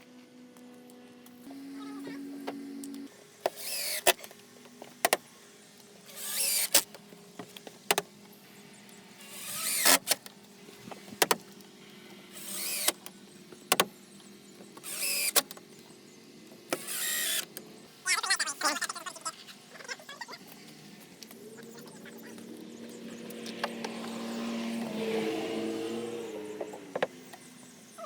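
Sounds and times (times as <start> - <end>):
cordless drill whining: 1.4 - 7.3, 8.6 - 10.3, 11.5 - 18.1.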